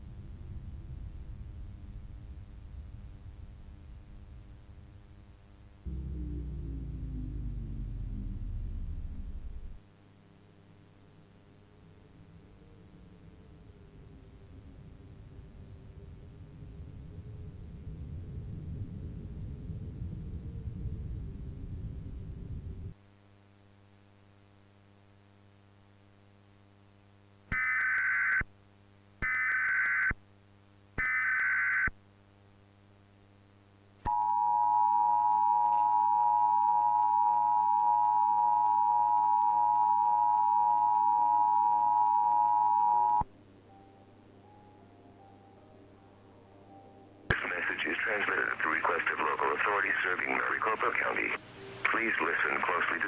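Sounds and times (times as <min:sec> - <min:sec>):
low rumble of storm wind: 0:00.0 - 0:10.4, 0:11.1 - 0:23.0
two-tone attention signal: 0:34.1 - 0:43.2.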